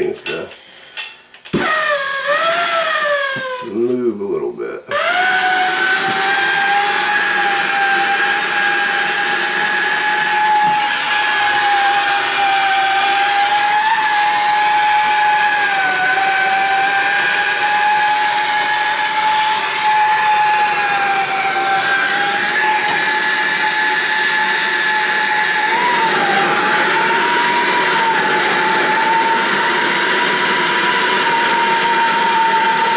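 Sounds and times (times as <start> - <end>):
gas torch hissing and whistling: 0.0 - 21.4.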